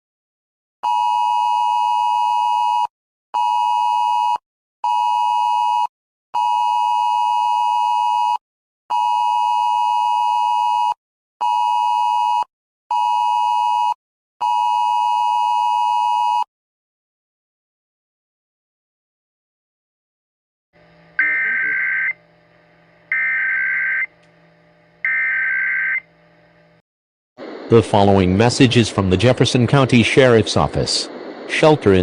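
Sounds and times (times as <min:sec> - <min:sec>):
loud two-tone alert beeps: 0:21.2 - 0:22.2.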